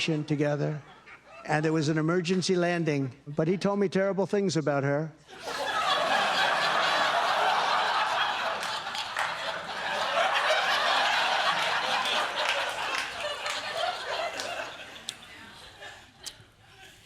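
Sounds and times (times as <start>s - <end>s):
audience laughing: 5.3s - 17.0s.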